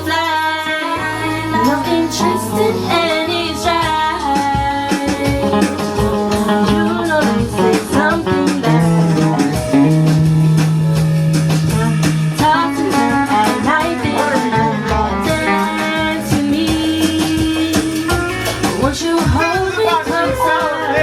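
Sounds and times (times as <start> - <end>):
song with guitar and drums: 0.0 - 21.0
person singing: 11.7 - 21.0.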